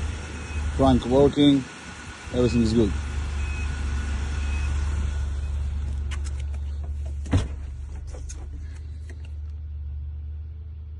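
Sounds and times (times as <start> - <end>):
car engine idling: 0.0 - 10.9
sharp thump: 6.8 - 8.6.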